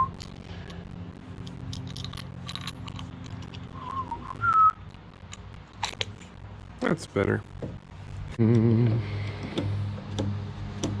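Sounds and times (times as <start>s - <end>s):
steady low hum: 0.0s - 11.0s
person whistling: 3.8s - 4.8s.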